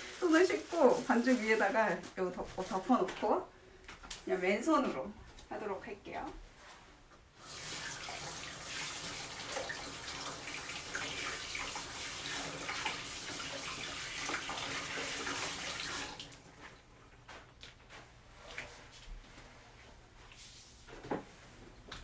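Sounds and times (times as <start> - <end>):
water splashing from tap: 7.4 - 16.5
hands washing under water: 7.4 - 16.7.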